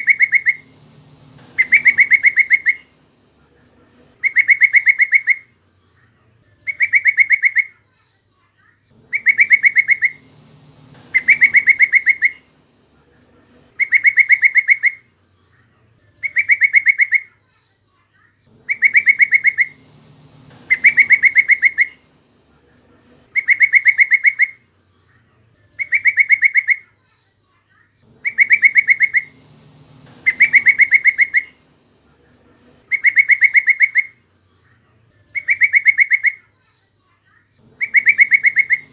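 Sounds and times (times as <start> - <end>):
bird chattering calls: 0.0 - 3.2, 3.9 - 5.6, 6.7 - 7.8, 9.0 - 12.8, 13.5 - 15.1, 16.2 - 17.3, 18.5 - 24.7, 25.8 - 26.9, 28.1 - 34.3, 35.3 - 36.5, 37.6 - 38.9.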